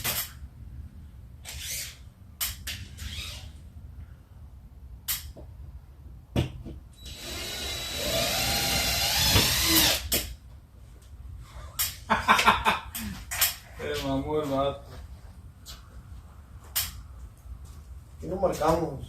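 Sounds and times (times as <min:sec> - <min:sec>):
power drill whining: 0:07.0 - 0:10.1.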